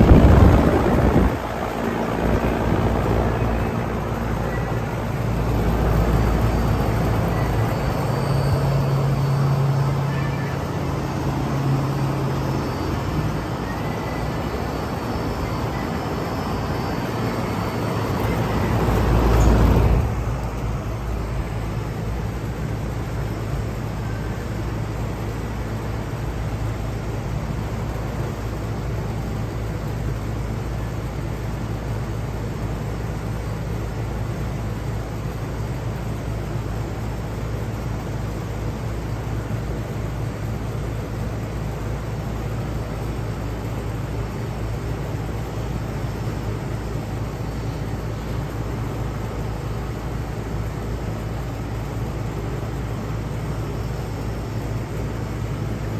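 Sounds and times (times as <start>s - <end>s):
compressor hum: 0.0s - 22.6s
air conditioner fan rush: 0.0s - 55.9s.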